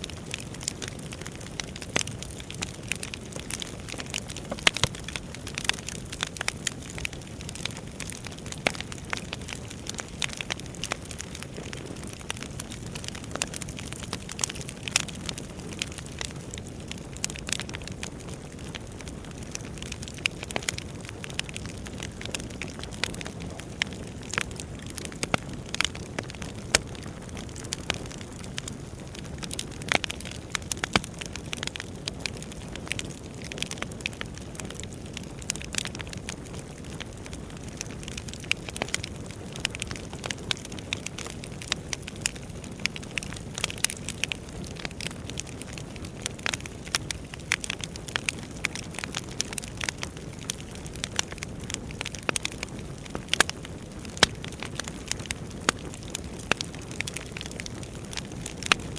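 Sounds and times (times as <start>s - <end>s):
firewood pops and snaps: 2.0s - 12.4s, 19.8s - 28.7s, 29.4s - 31.6s, 53.3s - 57.5s, 58.1s - 58.8s.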